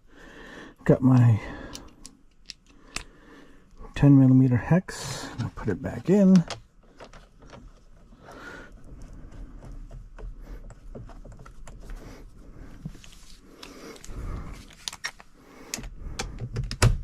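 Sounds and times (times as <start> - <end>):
heavy breathing: 0.0 - 4.1, 6.8 - 11.1, 11.8 - 16.5
hex tool and bolt clicks: 1.1 - 3.1.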